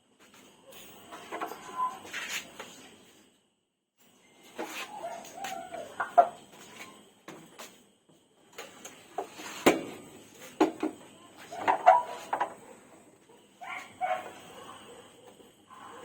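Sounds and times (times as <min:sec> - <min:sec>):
knocks and clunks of stove parts: 0:09.6 - 0:11.0.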